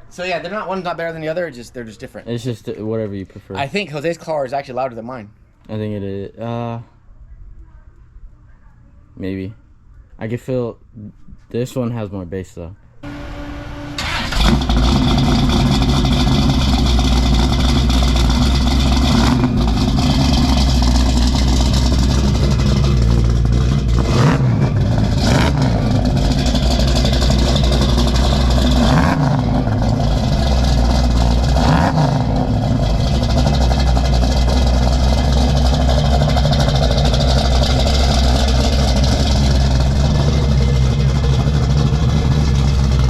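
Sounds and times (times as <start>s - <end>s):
car engine with deep exhaust note: 13.0s - 43.0s.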